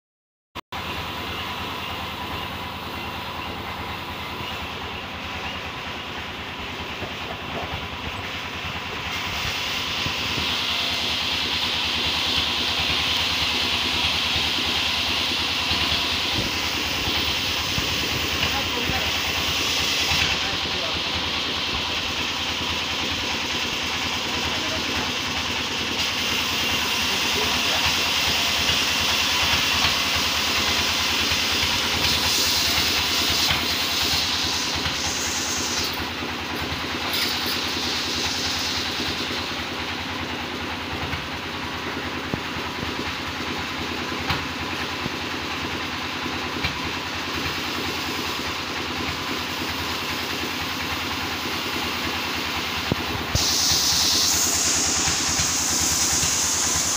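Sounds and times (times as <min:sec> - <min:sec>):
sawmill machinery sawing log: 0:00.8 - 0:56.9
high hiss: 0:52.9 - 0:56.9.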